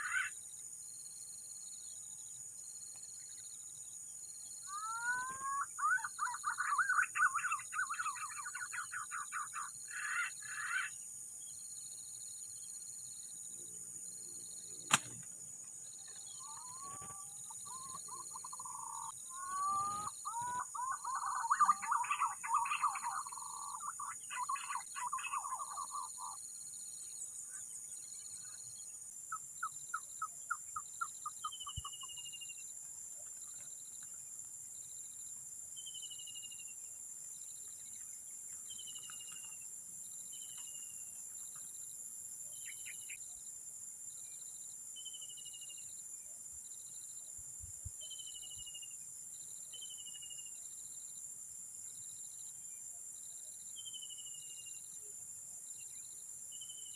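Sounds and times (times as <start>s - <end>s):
birds chattering whistles: 0.0s - 0.4s, 4.6s - 11.0s, 16.3s - 26.4s
insects chirring: 0.0s - 56.9s
sharp click: 14.9s - 15.3s.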